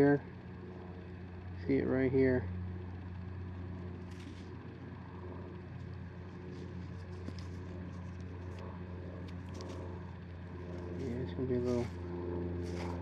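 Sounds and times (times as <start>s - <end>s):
low steady hum: 0.0s - 13.0s
dirt crackling and scraping by hand: 4.0s - 4.6s, 5.8s - 10.0s, 10.6s - 13.0s.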